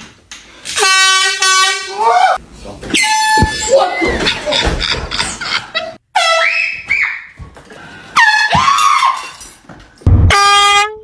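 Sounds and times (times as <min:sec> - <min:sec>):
air horn blasts: 0:00.8 - 0:02.0, 0:10.2 - 0:11.0.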